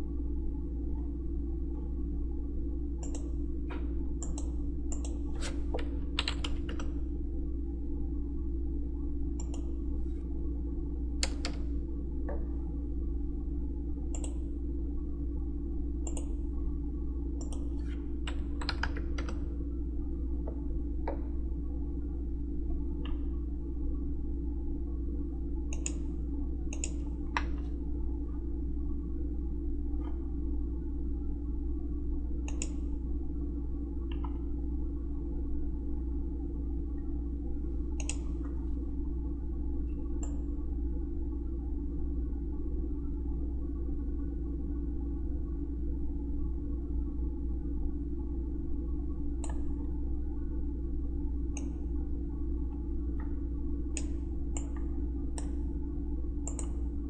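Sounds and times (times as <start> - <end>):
steady low hum: 0.0 - 57.0
keyboard and mouse clicks: 3.0 - 6.9, 9.4 - 9.7, 11.2 - 11.7, 14.1 - 14.4, 16.0 - 16.4, 17.4 - 19.4, 26.7 - 27.6, 32.5 - 32.8, 38.0 - 38.4, 56.4 - 56.8.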